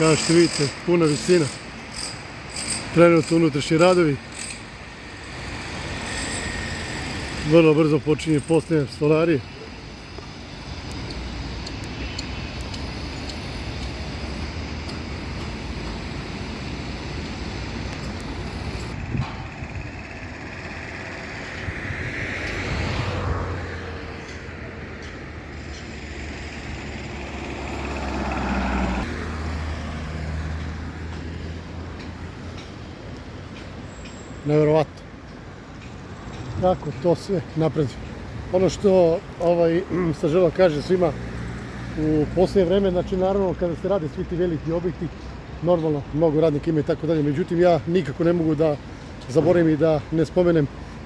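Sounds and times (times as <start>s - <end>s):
traffic rumble: 0.0s - 51.0s
loud vehicle passing: 19.7s - 31.9s.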